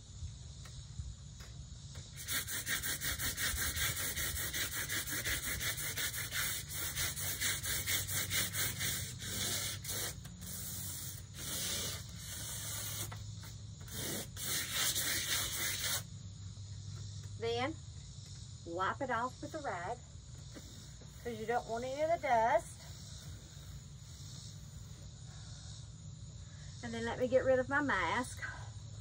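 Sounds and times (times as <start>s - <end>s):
sandpaper rubbing on panel: 2.1s - 16.1s.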